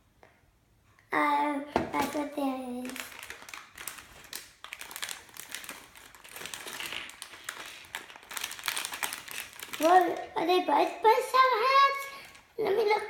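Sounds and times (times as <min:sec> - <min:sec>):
packaging crinkling: 0:02.0 - 0:10.8.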